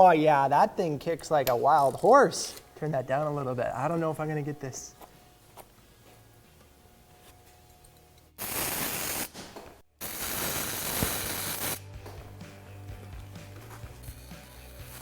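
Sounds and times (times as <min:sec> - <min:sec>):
welding arc crackling: 0:08.4 - 0:11.9, 0:13.9 - 0:15.0.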